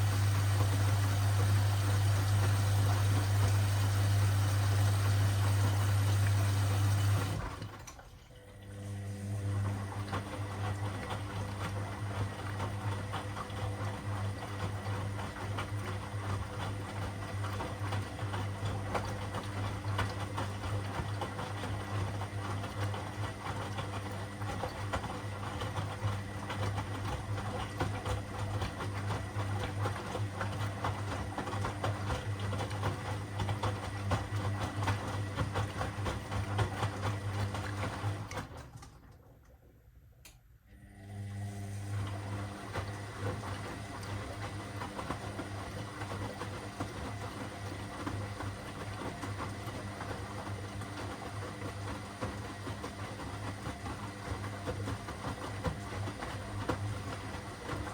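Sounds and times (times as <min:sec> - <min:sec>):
washing machine motor hum: 0:00.0 - 0:39.6, 0:40.7 - 0:57.9.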